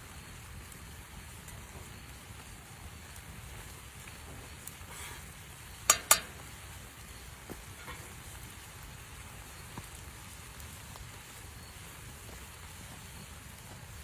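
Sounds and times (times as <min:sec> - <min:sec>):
chicken sizzling in a pan: 0:00.0 - 0:14.0
faint ticks: 0:05.9 - 0:06.5
sharp clicks: 0:05.9 - 0:06.5.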